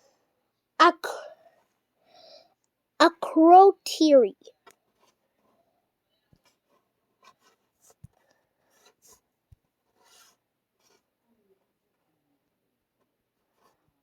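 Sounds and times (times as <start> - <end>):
soft rubbing noises: 6.3 - 11.3.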